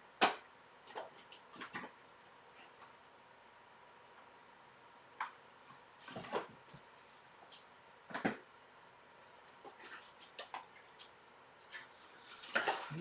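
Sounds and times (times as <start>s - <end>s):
objects knocking and clattering: 12.3s - 13.0s.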